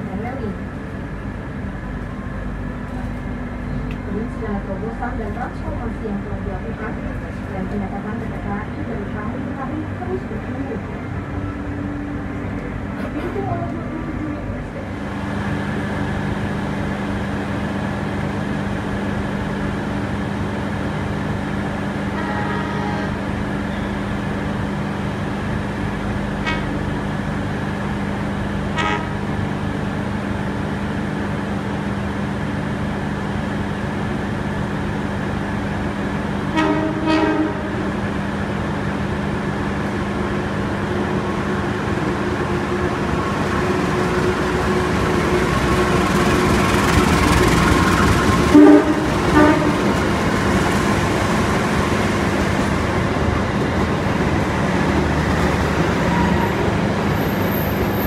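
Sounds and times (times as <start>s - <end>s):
train carriage hum: 0.0s - 58.0s
train horn toot: 22.1s - 24.0s, 26.4s - 26.8s, 28.8s - 29.2s, 36.5s - 37.8s, 48.5s - 50.0s.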